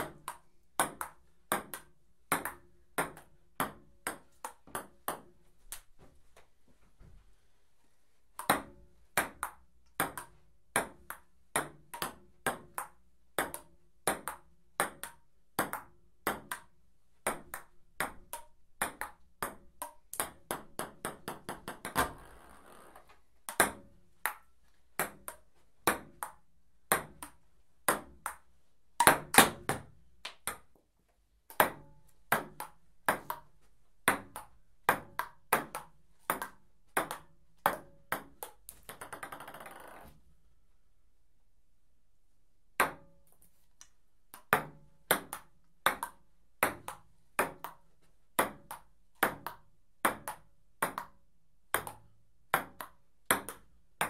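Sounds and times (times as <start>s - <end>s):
ping pong ball clicking: 34.1s - 40.1s.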